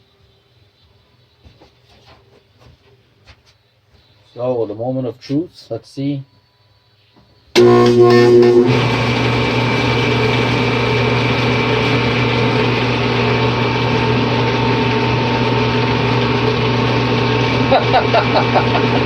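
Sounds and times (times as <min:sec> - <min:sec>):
dough sheeter motor and rollers: 0:07.6 - 0:19.0.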